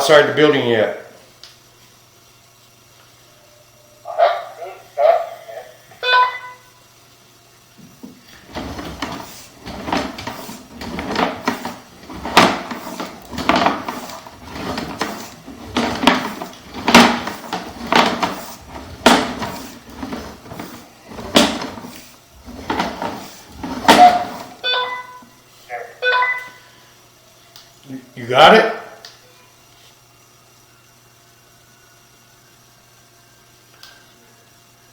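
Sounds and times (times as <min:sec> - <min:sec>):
cable reel knocking and clattering: 0:08.0 - 0:24.6.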